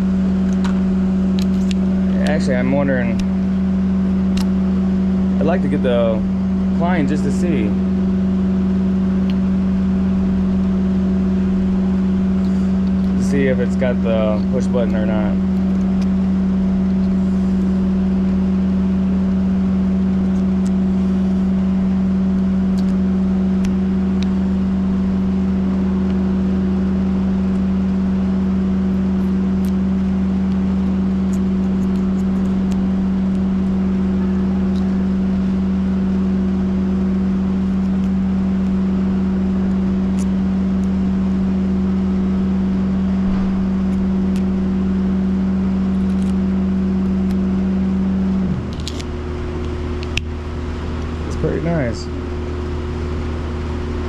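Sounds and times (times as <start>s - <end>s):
low mechanical hum: 0.0s - 54.0s.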